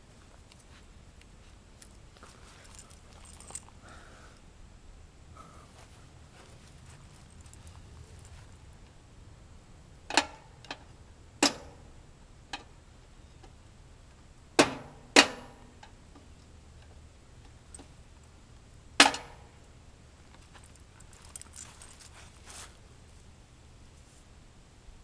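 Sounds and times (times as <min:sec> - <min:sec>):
sharp ringing knocks and clanks: 0:14.6 - 0:15.8, 0:19.0 - 0:19.5.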